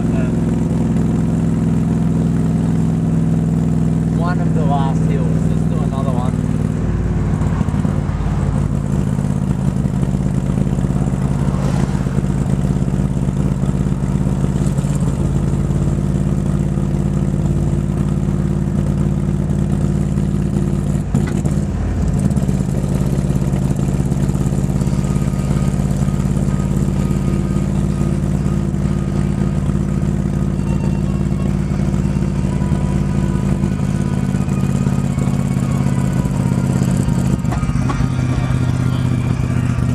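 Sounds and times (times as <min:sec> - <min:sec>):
car engine idling and misfiring: 0:00.0 - 0:39.9.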